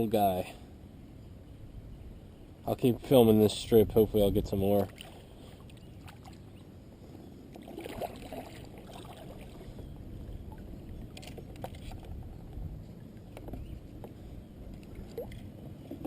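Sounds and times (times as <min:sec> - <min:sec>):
water noise: 0:01.4 - 0:16.0
wind noise: 0:03.0 - 0:04.8, 0:07.8 - 0:16.0.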